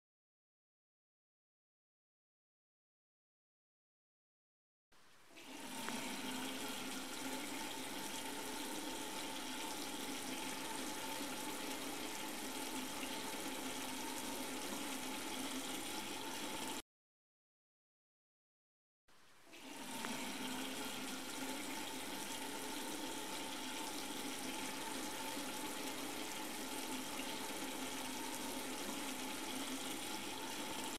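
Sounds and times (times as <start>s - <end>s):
water running from a tap: 5.3s - 16.8s, 19.5s - 30.9s.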